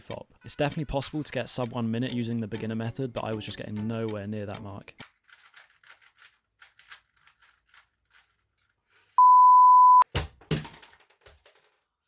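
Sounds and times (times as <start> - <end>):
puzzle cube layers clicking: 5.1 - 8.3
electronic beep: 9.2 - 10.0.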